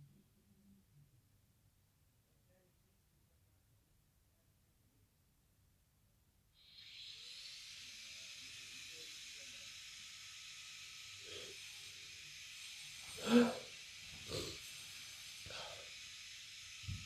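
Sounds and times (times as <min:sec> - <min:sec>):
steady background hiss: 0:06.5 - 0:17.0
person sneezing: 0:13.2 - 0:13.7.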